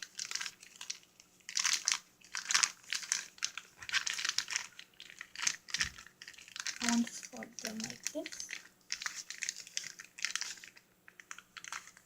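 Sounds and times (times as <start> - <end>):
plastic bag crinkling: 0.0 - 12.0.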